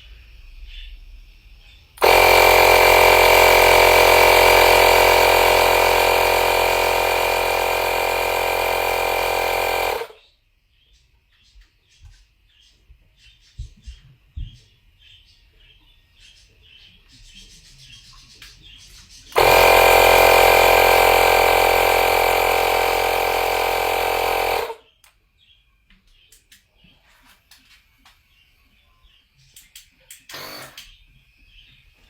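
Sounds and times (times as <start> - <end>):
small electric air pump running: 2.0 - 10.2, 19.3 - 24.8, 30.3 - 30.8.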